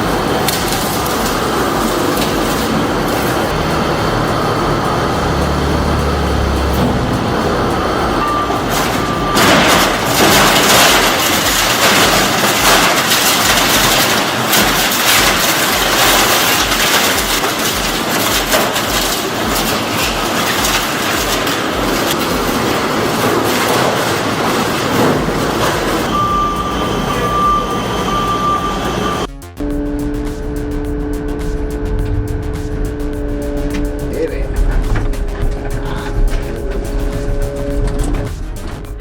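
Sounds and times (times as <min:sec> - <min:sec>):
industrial shredding machinery grinding: 0:00.0 - 0:39.0
steady high beep: 0:01.2 - 0:11.6, 0:26.1 - 0:34.6.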